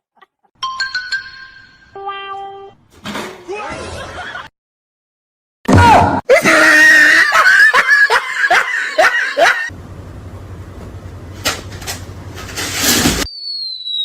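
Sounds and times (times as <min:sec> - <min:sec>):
laughter in quick bursts: 0:07.2 - 0:09.7.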